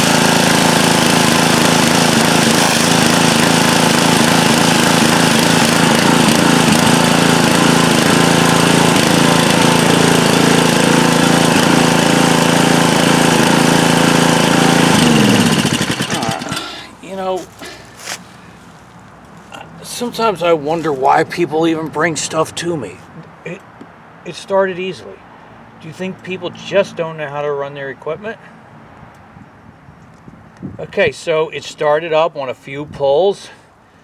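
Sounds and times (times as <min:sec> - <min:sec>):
engine winding down: 0:00.0 - 0:18.0
pressure washer engine running: 0:00.0 - 0:21.4.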